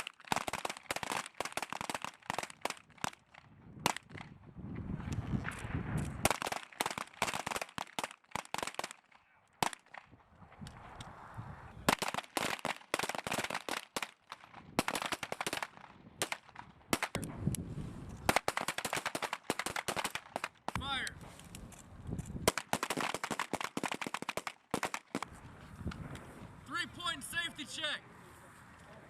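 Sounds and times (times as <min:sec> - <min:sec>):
pistol gunshots: 0:05.4 - 0:10.1, 0:11.9 - 0:17.2, 0:18.2 - 0:20.8, 0:22.4 - 0:25.3.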